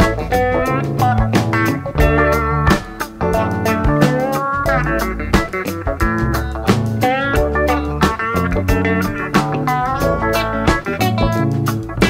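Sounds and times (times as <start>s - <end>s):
bass: 0.0s - 12.0s
lead guitar: 0.0s - 12.0s
steady drum beat: 0.0s - 12.0s.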